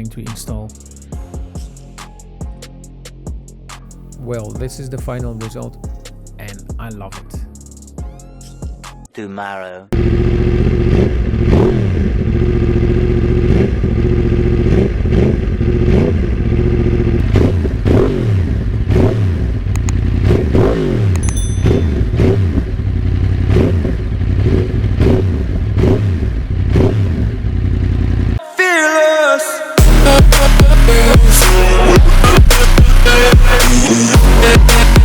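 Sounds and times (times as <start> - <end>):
motorcycle engine revving: 10.0 - 28.4, 29.8 - 35.0.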